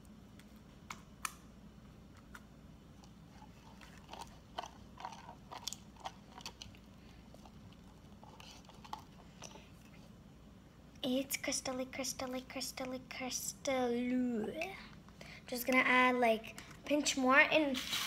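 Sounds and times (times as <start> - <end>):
slime squelching: 2.2 - 10.1.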